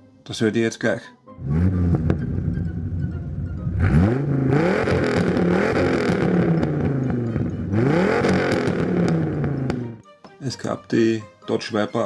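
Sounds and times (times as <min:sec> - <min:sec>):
car engine idling and revving: 0:01.4 - 0:10.0.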